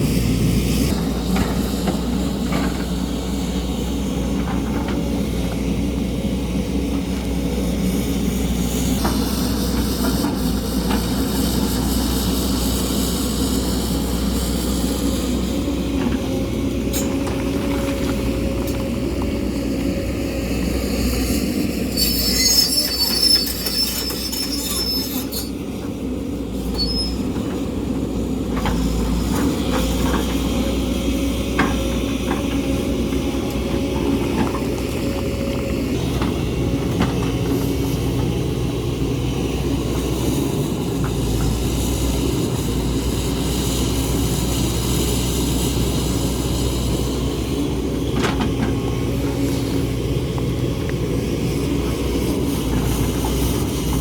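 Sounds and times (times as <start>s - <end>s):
excavator diesel engine running: 0.0s - 54.0s
metallic squeal of steel scraping rock: 21.8s - 25.6s, 26.7s - 27.5s.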